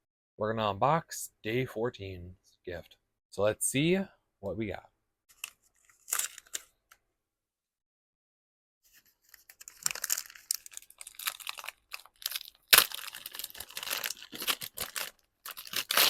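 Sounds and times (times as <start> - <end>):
packaging tearing and crinkling: 5.4 - 6.6, 9.3 - 16.0.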